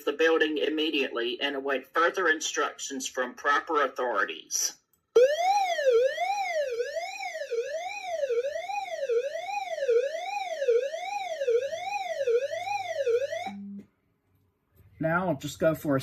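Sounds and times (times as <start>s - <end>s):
alarm siren sweeping up and down: 5.2s - 13.8s.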